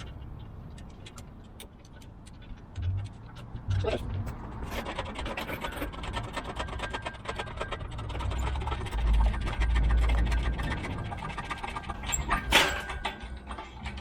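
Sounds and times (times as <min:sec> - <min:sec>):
wood and roots crackling and creaking: 0:00.0 - 0:14.0
deep rumble: 0:02.7 - 0:04.8.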